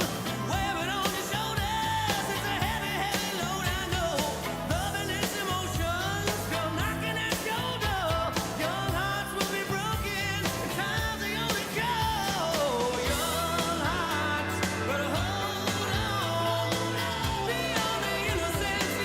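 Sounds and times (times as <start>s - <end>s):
pop-rock song with vocals: 0.0s - 19.0s.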